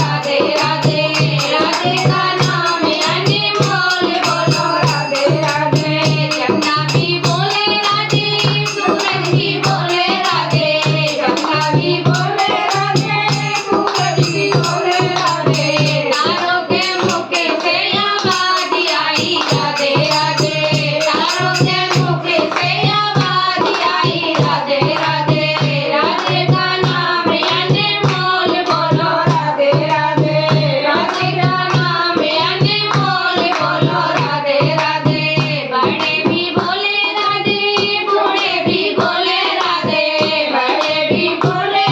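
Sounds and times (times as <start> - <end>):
percussion: 0.0 - 41.9.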